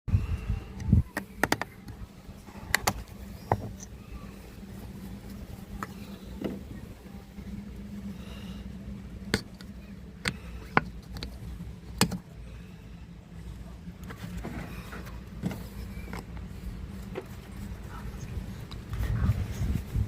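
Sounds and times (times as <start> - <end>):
steady low hum: 0.1 - 20.0.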